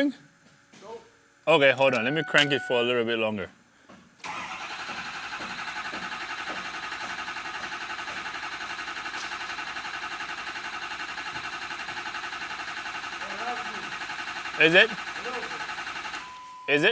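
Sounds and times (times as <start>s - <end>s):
diesel engine starter cranking: 4.2s - 16.9s.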